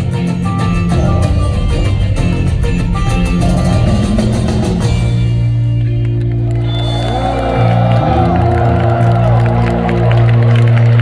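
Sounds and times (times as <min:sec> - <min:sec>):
live rock band playing: 0:00.0 - 0:11.0
drum hits: 0:00.8 - 0:05.6.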